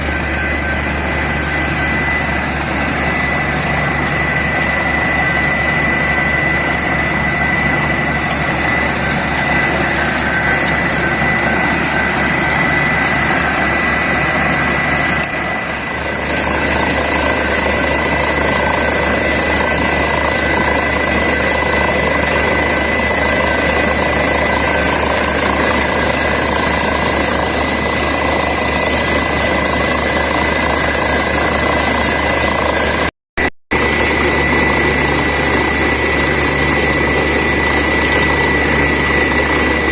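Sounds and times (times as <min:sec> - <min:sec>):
drilling rig and compressor running: 0:00.0 - 0:39.9.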